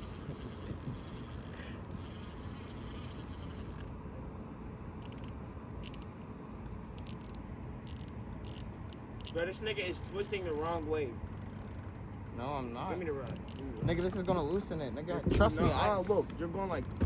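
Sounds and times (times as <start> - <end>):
fishing reel ratcheting: 0.0 - 4.0, 5.0 - 12.0, 13.2 - 14.6, 16.7 - 17.0.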